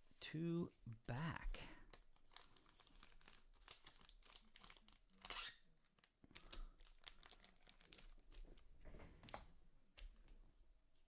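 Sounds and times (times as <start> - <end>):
foil wrapper crinkling: 1.9 - 5.3, 6.0 - 8.4.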